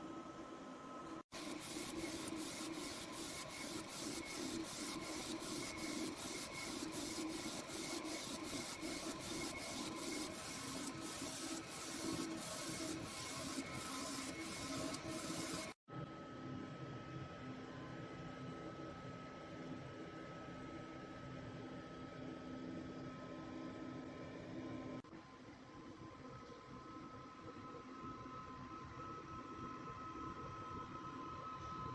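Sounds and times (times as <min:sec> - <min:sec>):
printer mechanism running rhythmically: 0:01.3 - 0:15.8.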